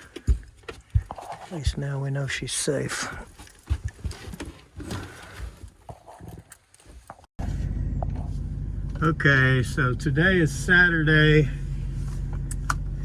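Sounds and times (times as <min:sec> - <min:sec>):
vehicle running inside cabin: 0:07.4 - 0:13.0.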